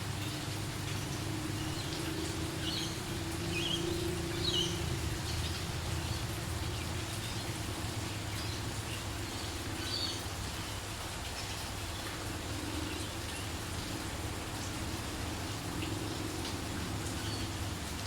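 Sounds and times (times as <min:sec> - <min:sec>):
light rain falling: 0:00.0 - 0:18.0.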